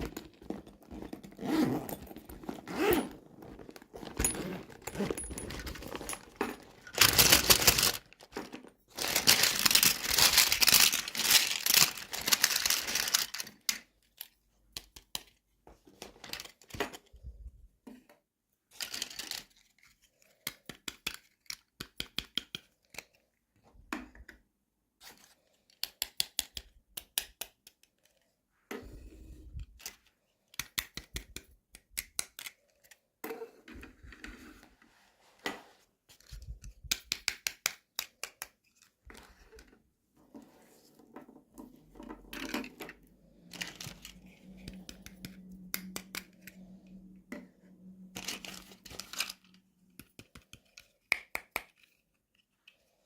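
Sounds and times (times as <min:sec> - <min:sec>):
plastic wrap tearing and crinkling: 0:06.9 - 0:13.6.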